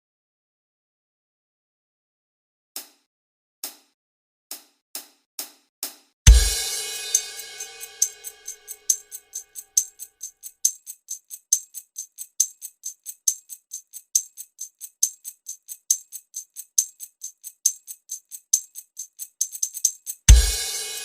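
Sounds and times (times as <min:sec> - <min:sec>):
shaker-like percussion pattern: 0:04.5 - 0:21.0.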